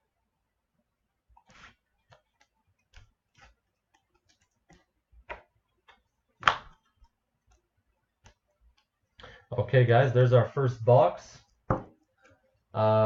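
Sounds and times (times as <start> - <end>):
cards clicking and tapping: 1.4 - 7.6, 8.2 - 8.9.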